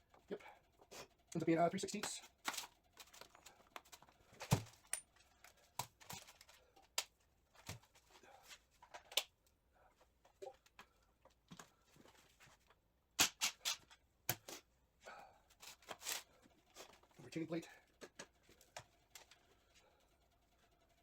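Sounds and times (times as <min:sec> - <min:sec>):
hand tools and metal parts clinking: 0:00.1 - 0:06.9
loud sharp clicks: 0:13.2 - 0:13.8.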